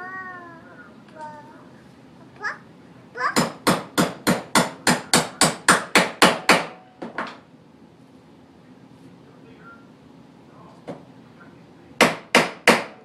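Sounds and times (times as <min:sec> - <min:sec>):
hammer striking: 0:03.4 - 0:06.8, 0:12.0 - 0:13.0.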